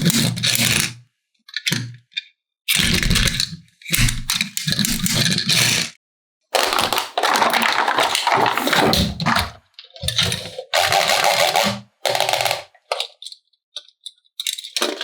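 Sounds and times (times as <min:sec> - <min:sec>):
plastic toy pieces rattling: 0:06.6 - 0:15.0.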